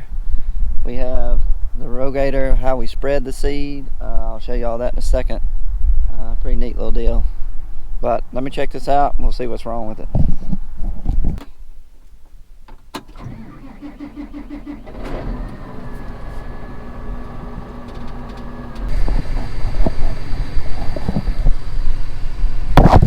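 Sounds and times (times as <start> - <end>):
vehicle engine cranking and running: 13.0 - 23.0.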